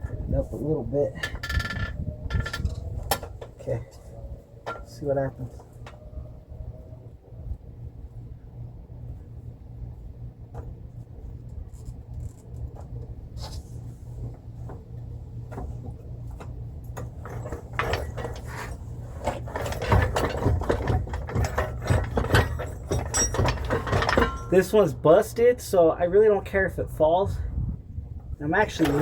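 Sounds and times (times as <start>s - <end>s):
metal clicks and rattling: 1.2s - 3.6s, 16.4s - 24.8s.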